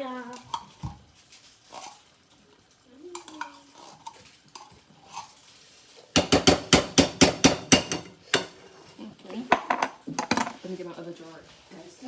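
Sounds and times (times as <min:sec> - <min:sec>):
spoon stirring and scraping pot: 0:00.2 - 0:02.4, 0:03.1 - 0:10.8
spoon knocking on metal pot: 0:06.2 - 0:08.6.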